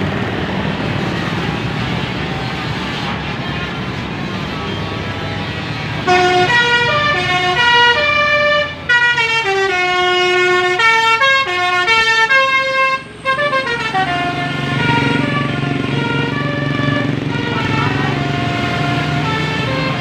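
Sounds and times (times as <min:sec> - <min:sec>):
musical air horn tune: 0:06.0 - 0:20.0.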